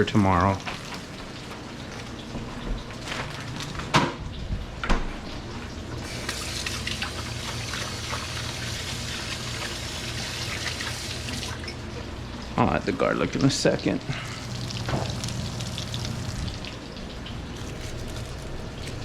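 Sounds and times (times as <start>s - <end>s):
kitchen tap running: 0.0s - 3.8s, 6.0s - 19.0s
meat sizzling in a pan: 14.2s - 16.8s.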